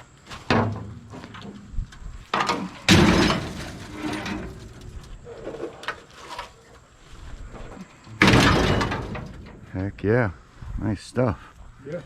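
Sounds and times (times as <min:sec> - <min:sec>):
scrap metal crashing: 0:02.3 - 0:05.1, 0:08.1 - 0:09.7
metal knocks and scrapes: 0:02.3 - 0:06.5, 0:08.1 - 0:09.7.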